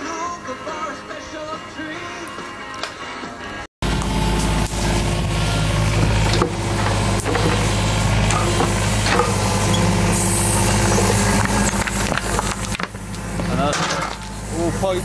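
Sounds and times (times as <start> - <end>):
diesel digger engine running: 3.8 - 15.0
digging clanks and scrapes: 6.0 - 14.4.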